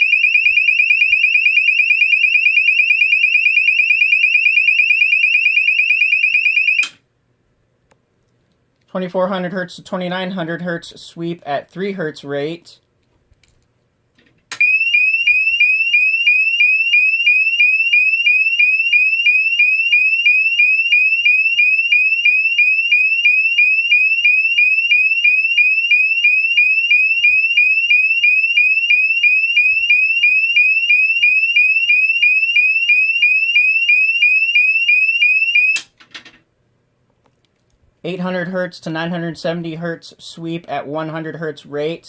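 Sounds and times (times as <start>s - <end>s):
alarm sounder sweep tone: 0.0s - 7.0s, 14.6s - 35.8s.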